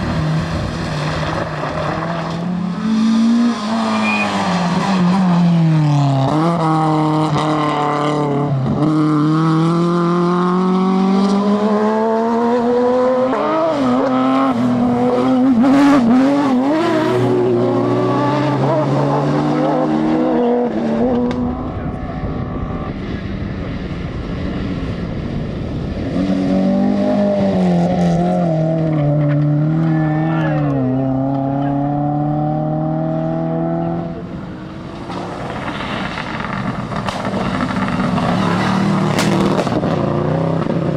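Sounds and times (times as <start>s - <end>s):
rally car engine revving: 0.0s - 40.9s.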